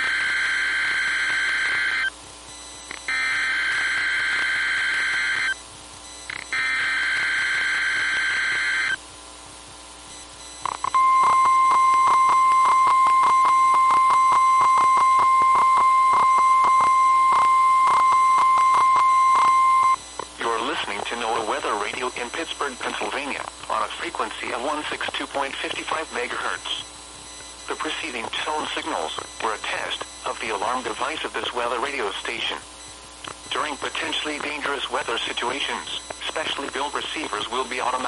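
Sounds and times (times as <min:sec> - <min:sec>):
digital data bursts: 0:00.0 - 0:09.0, 0:10.1 - 0:38.0
steady warning alarm tone: 0:00.0 - 0:09.0, 0:10.1 - 0:23.3.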